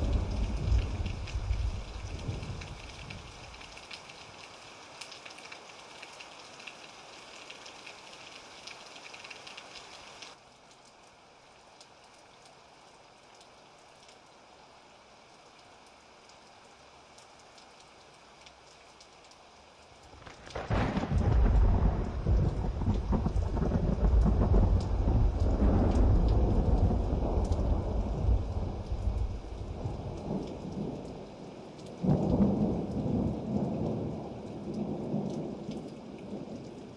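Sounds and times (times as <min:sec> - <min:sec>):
thunderclap and deep rumble: 0:00.0 - 0:03.6, 0:20.2 - 0:31.1, 0:32.0 - 0:35.6
steady rain falling: 0:00.0 - 0:36.9.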